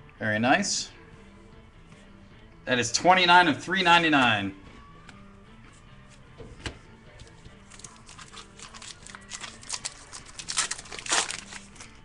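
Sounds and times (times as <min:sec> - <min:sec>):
foil wrapper crinkling: 0:07.7 - 0:12.0.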